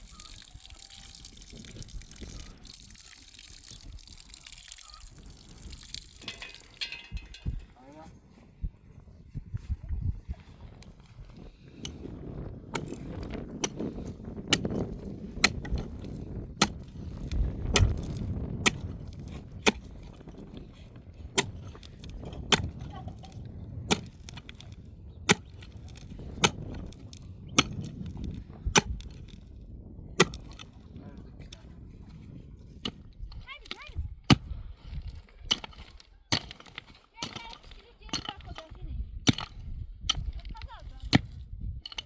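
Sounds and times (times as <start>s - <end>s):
hand tool striking: 27.6s - 27.9s, 35.5s - 42.0s.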